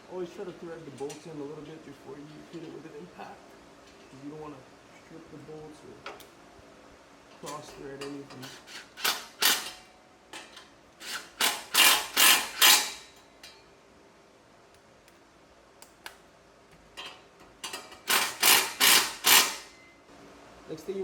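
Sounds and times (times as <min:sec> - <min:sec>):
impact wrench rattling: 0:10.4 - 0:13.2, 0:17.7 - 0:19.8.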